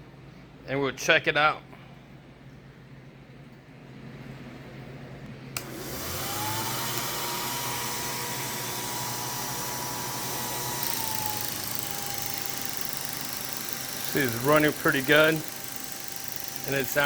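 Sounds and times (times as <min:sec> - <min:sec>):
film projector motor whirring: 0:05.6 - 0:17.0.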